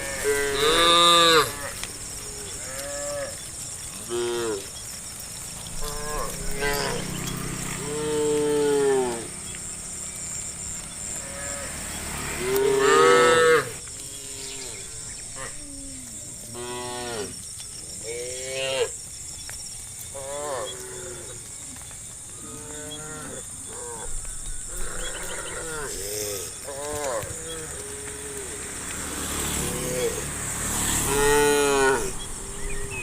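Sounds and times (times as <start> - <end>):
cattle mooing: 0.0 - 4.7, 5.7 - 9.4, 11.1 - 15.6, 24.7 - 28.6, 29.6 - 30.2, 30.9 - 32.3.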